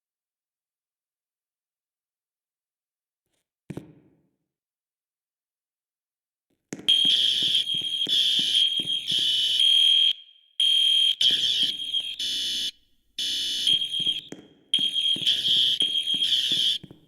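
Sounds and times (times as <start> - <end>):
fire alarm horns blasting: 6.9 - 17.0.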